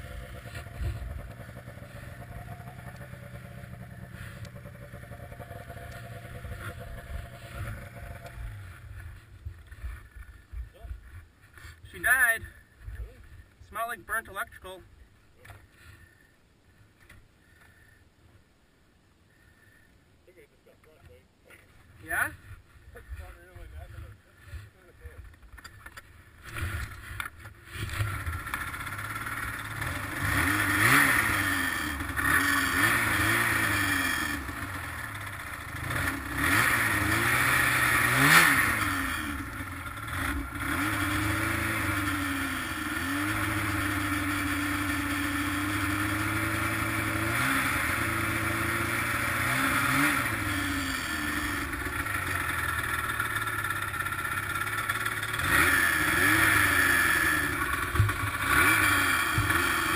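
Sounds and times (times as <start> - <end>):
snowmobile engine revving: 0.0 - 10.2, 26.4 - 59.9.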